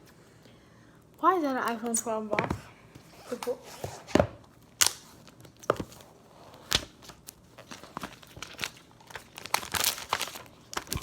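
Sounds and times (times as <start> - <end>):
packaging crinkling and tearing: 4.7 - 11.0.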